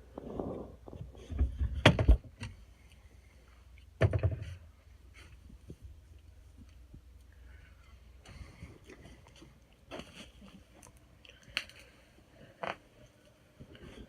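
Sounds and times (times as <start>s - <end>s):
knocks and thumps: 0.3s - 2.5s, 4.0s - 4.6s.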